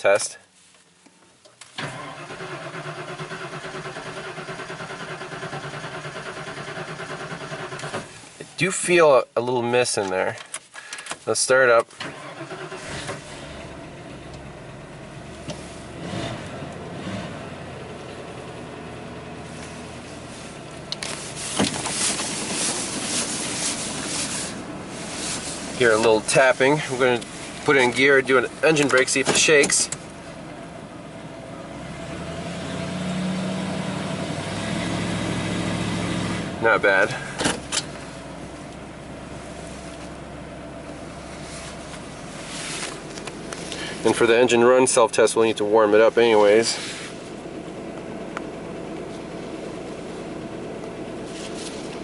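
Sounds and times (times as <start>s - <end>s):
engine cranking on starter: 1.6s - 8.3s, 11.9s - 14.5s
truck engine running: 12.3s - 52.0s.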